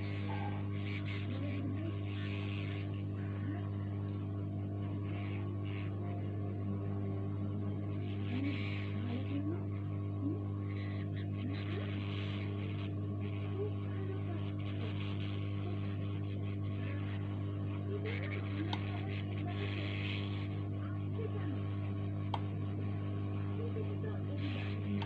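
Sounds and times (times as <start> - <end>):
electrical mains hum: 0.0 - 25.0.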